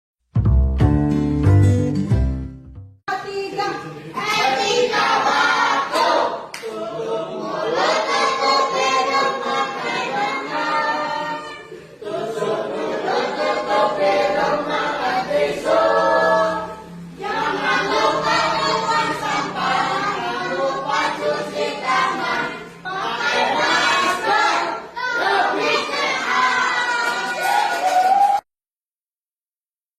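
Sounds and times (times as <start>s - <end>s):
group of voices singing: 3.5s - 27.6s.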